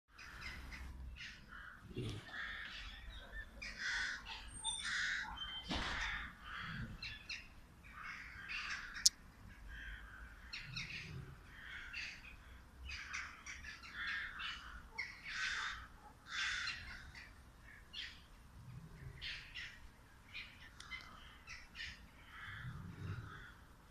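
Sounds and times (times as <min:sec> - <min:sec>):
crows cawing: 0:00.1 - 0:07.1, 0:07.9 - 0:10.7, 0:11.4 - 0:17.3, 0:21.2 - 0:23.7
faint low grunts: 0:01.8 - 0:02.5, 0:22.5 - 0:23.9.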